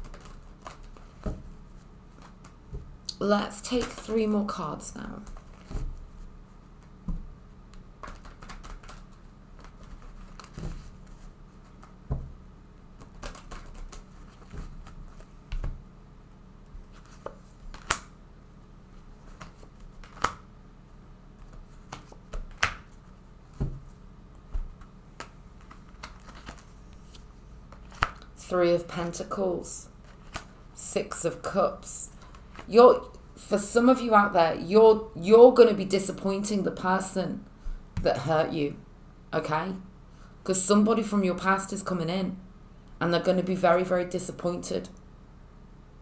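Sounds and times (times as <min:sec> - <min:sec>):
cards being shuffled: 0:00.0 - 0:03.0, 0:03.7 - 0:04.3, 0:05.2 - 0:12.3, 0:12.9 - 0:15.8, 0:16.6 - 0:18.2, 0:18.9 - 0:20.5, 0:21.4 - 0:33.3.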